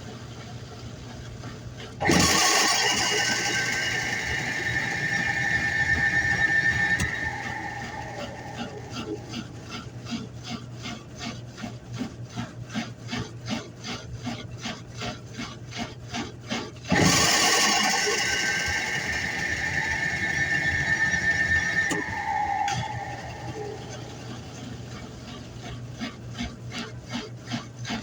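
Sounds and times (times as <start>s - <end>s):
washing machine scraping beat: 1.8s - 28.0s
whir with high whine: 1.9s - 10.9s, 16.8s - 28.0s.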